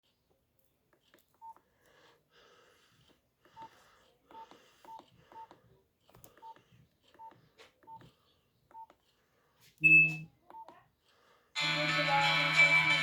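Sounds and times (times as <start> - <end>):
phone keypad beeps: 9.8 - 10.7.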